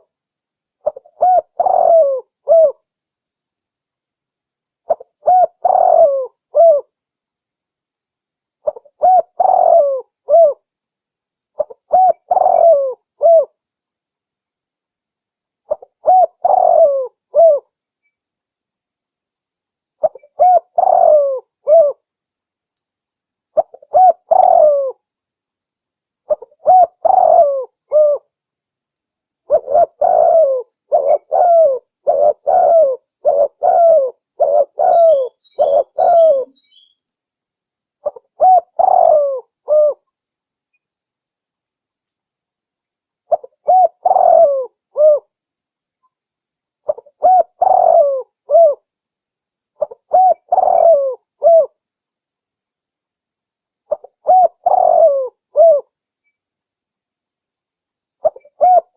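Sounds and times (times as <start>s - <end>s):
dove cooing: 0.8s - 2.8s, 4.9s - 6.9s, 8.6s - 10.6s, 11.6s - 13.6s, 15.7s - 17.7s, 20.0s - 22.0s, 23.6s - 25.0s, 26.3s - 28.3s, 29.5s - 36.6s, 38.0s - 40.0s, 43.3s - 45.3s, 46.9s - 48.8s, 49.8s - 51.8s, 53.9s - 55.9s, 58.2s - 58.9s.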